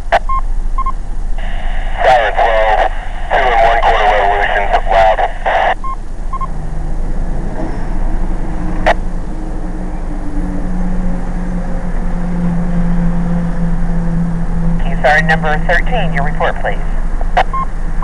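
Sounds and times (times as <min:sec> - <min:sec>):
short beeps: 0:05.8 - 0:06.6
car engine idling: 0:05.8 - 0:18.0.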